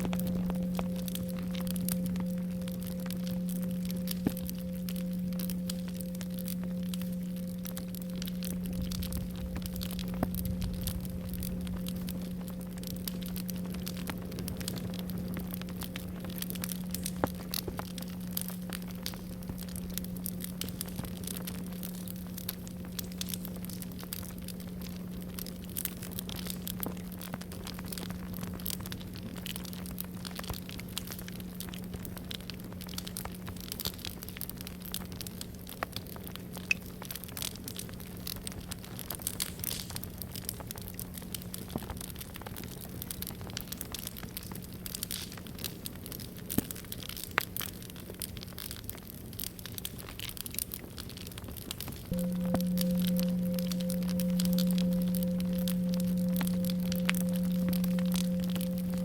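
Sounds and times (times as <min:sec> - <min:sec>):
singing bowl ringing: 0:00.0 - 0:28.8, 0:52.1 - 0:59.0
campfire crackling and popping: 0:00.0 - 0:59.0.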